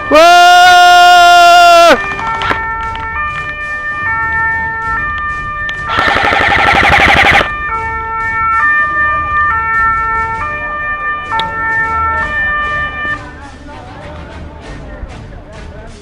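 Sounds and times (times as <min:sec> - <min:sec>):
electronic two-tone siren wailing: 0:05.7 - 0:13.2
loud rattling burst: 0:05.9 - 0:07.5.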